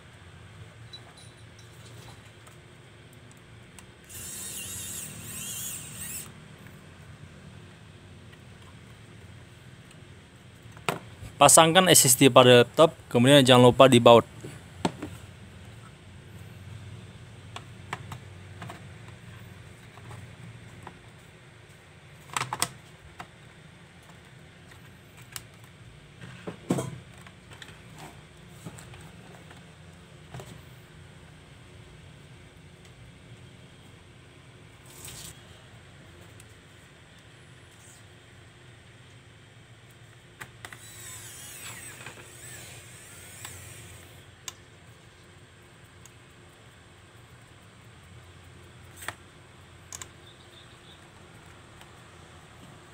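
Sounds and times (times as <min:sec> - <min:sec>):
screwdriver high squeaky whine: 0:04.0 - 0:06.4, 0:40.7 - 0:44.2.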